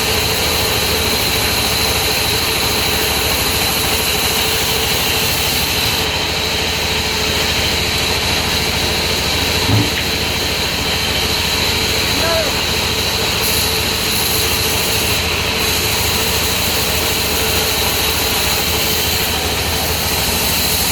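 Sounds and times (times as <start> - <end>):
sawmill machinery drone: 0.0 - 20.9
thump: 9.6 - 10.2.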